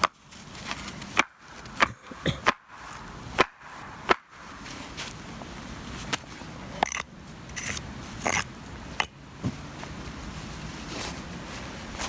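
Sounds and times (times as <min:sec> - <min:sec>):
axe chopping wood: 0:01.0 - 0:04.4.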